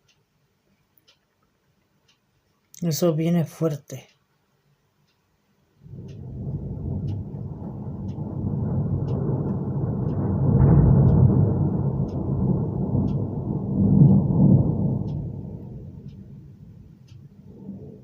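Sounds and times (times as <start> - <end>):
rolling thunder rumble: 5.8 - 18.0.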